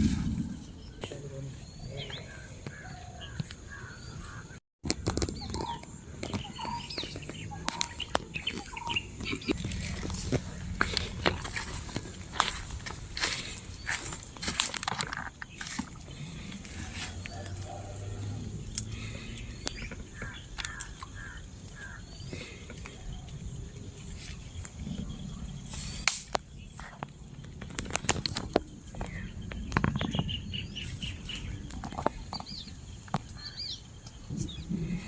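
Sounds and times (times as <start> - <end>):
low rumble: 0.0 - 1.0, 9.5 - 14.3
high bird chirps: 5.3 - 12.2.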